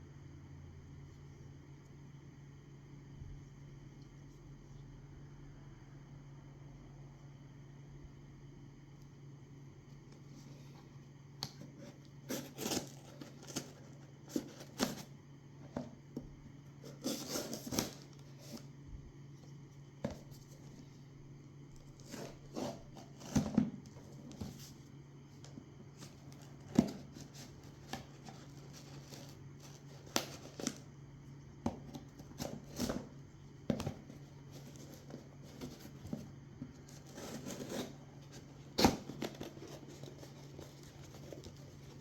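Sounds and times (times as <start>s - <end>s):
steady low hum: 0.0s - 42.0s
packaging rustling and tearing: 12.2s - 15.1s, 33.9s - 42.0s.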